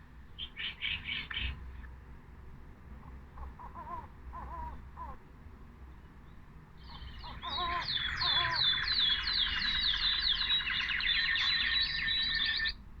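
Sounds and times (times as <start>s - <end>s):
bird song: 0.3s - 1.9s, 5.9s - 12.8s.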